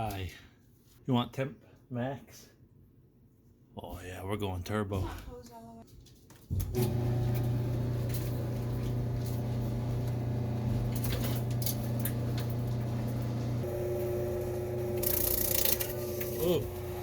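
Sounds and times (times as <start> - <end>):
clothes dryer humming: 6.5 - 17.0.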